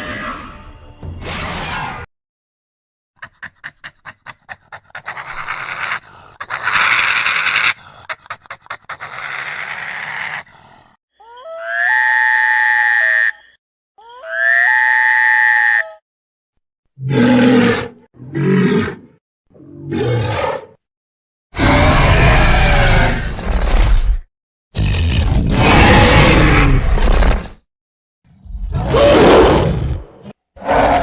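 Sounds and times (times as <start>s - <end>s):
creature clicks: 3.2s - 10.8s
raspy creature growl: 4.4s - 11.0s, 21.6s - 24.2s, 28.4s - 31.0s.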